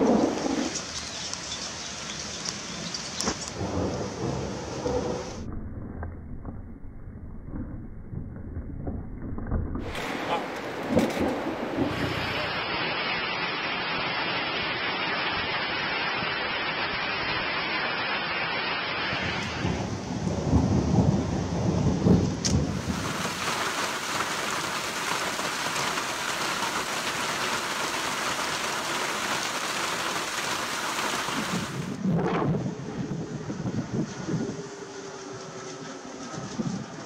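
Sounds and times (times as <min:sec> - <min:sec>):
thunder rumbling: 0:00.0 - 0:01.0, 0:03.2 - 0:15.6, 0:18.8 - 0:30.0, 0:31.2 - 0:35.5
heavy rain falling: 0:00.0 - 0:05.5, 0:09.8 - 0:32.0.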